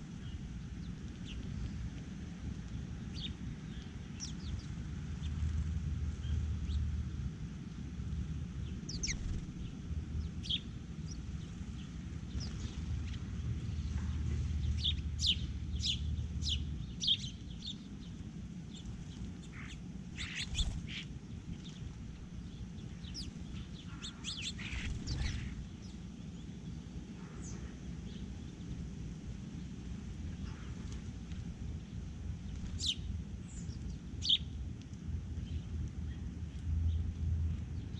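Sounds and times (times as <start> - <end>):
birds chirping: 8.6 - 28.9, 31.8 - 34.6.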